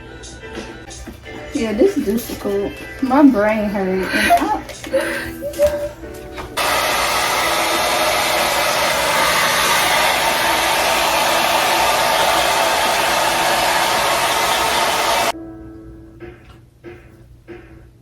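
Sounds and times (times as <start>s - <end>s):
hair dryer blowing: 6.6s - 15.4s.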